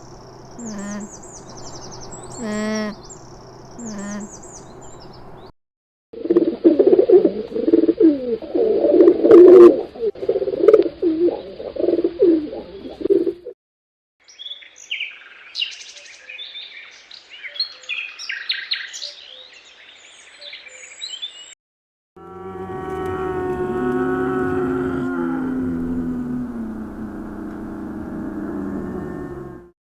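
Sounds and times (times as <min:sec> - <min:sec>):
birds chirping and tweeting: 0:00.0 - 0:05.5, 0:22.2 - 0:29.7
birds cooing: 0:00.0 - 0:05.5, 0:22.2 - 0:29.7.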